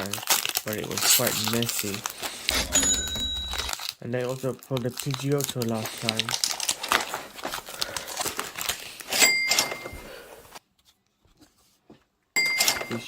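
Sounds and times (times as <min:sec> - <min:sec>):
foil wrapper crinkling and tearing: 0:00.0 - 0:02.5, 0:03.7 - 0:09.2.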